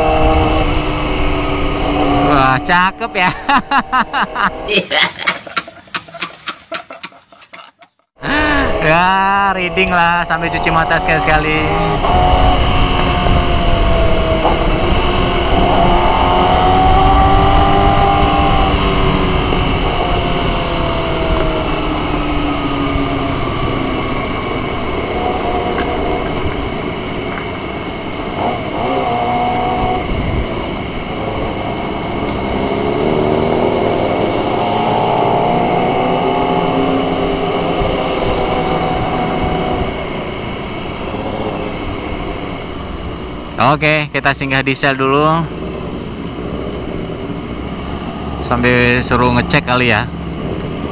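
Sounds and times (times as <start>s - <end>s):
motorcycle engine: 0.0s - 6.0s, 8.1s - 50.9s
wind rumble on microphone: 8.4s - 43.6s.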